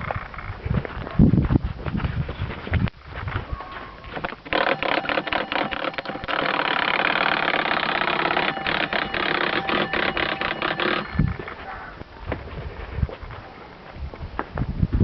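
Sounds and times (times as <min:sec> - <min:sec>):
electric doorbell ringing: 0:04.6 - 0:11.4.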